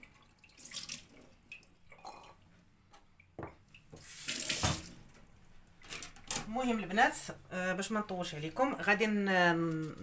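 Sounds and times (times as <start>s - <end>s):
water dripping in sink: 0.0s - 5.3s.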